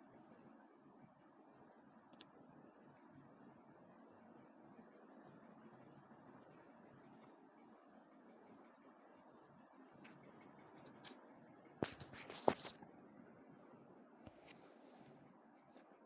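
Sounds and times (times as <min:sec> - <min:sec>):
crickets chirping: 0:00.0 - 0:16.0
faint ticks: 0:02.0 - 0:02.4.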